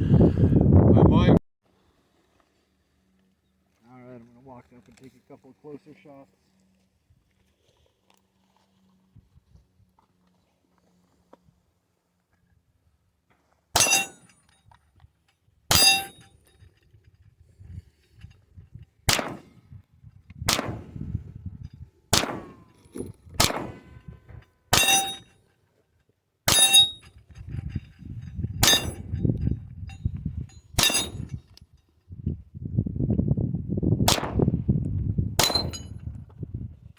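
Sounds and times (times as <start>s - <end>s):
wind rumble on microphone: 0.0s - 1.4s, 9.1s - 9.9s, 16.6s - 24.5s, 27.0s - 36.9s
pistol shots with metallic ring: 13.8s - 14.3s, 15.7s - 16.3s, 19.1s - 19.5s, 20.5s - 20.8s, 22.2s - 24.0s, 24.7s - 25.3s, 26.5s - 27.0s, 28.6s - 29.1s, 30.8s - 31.4s, 35.4s - 35.9s.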